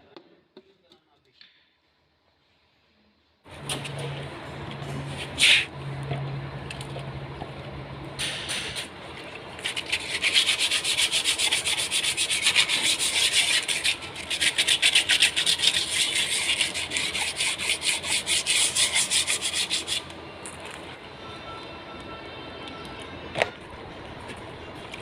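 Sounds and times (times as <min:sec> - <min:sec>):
rapid rhythmic scraping: 0:09.6 - 0:20.1.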